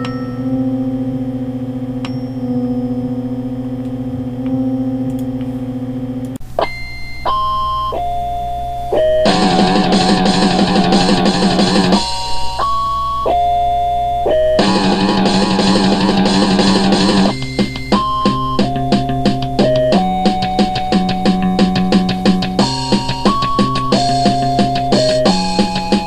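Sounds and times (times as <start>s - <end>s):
chime-like synth notes: 0.0s - 1.4s, 2.0s - 3.6s, 12.0s - 15.7s
droning synth chord: 0.0s - 6.4s
distorted guitar-like sound: 0.0s - 13.5s, 14.1s - 26.0s.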